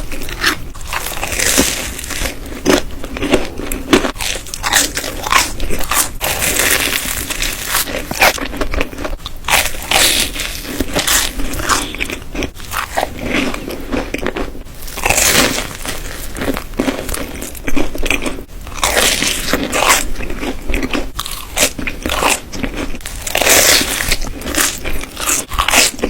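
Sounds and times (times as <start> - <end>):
crunchy chewing: 0.0 - 26.0.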